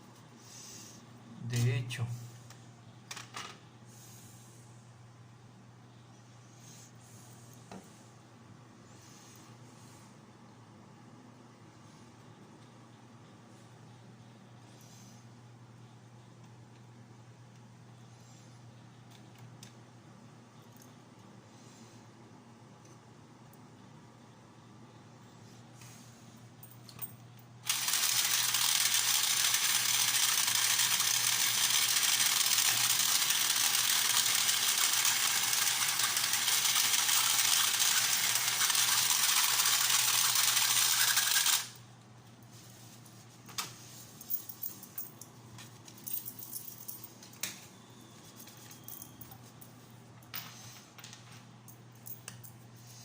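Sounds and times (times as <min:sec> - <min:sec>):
toy motor rattling whir: 0:27.6 - 0:41.8.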